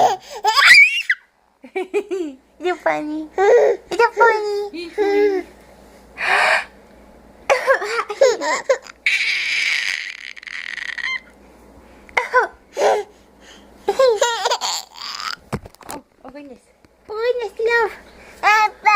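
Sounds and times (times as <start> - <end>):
child giggling: 0.0 - 2.4, 7.5 - 11.3, 12.2 - 13.1, 13.9 - 15.4
adult fake coughing: 7.5 - 8.1, 12.2 - 12.6.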